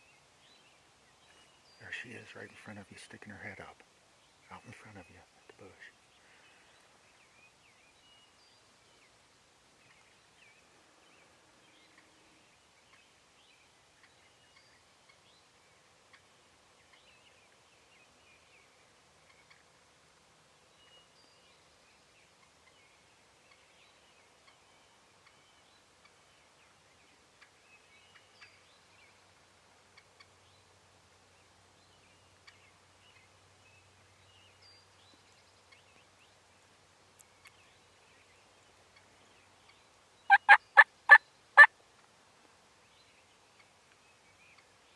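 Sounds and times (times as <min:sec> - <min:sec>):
distant bird calls: 0:37.2 - 0:41.7.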